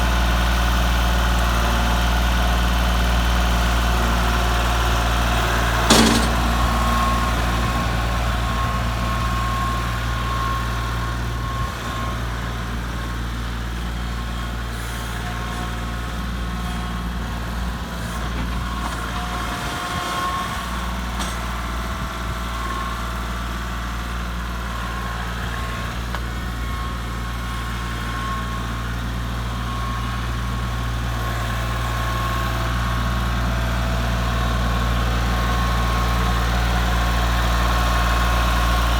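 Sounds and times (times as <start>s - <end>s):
tractor engine running: 0.1s - 14.3s
sharp metal clank: 5.9s - 7.1s.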